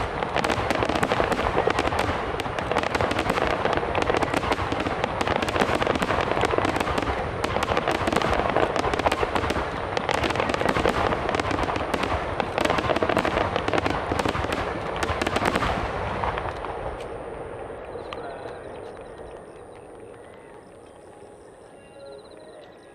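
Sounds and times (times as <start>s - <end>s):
fireworks bursting and crackling: 0.0s - 21.4s.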